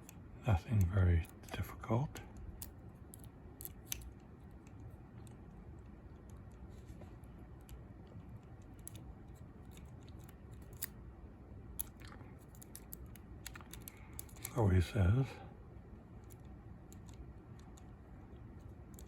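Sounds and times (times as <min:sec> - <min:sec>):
low steady hum: 0:00.0 - 0:19.0
lock picks scratching: 0:02.3 - 0:05.4, 0:07.4 - 0:11.0, 0:11.7 - 0:14.6, 0:16.2 - 0:19.0.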